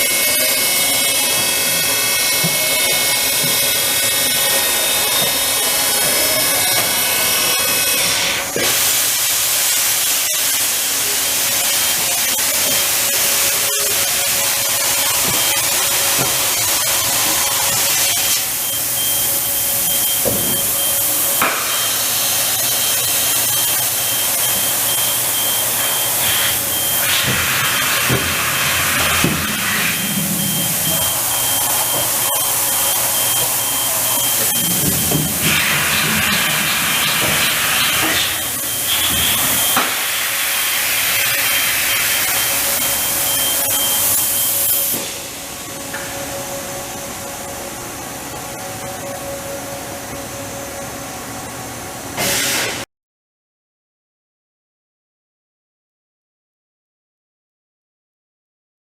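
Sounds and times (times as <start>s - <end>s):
high machine whine: 0.0s - 52.8s
coolant spraying hiss: 8.6s - 12.2s.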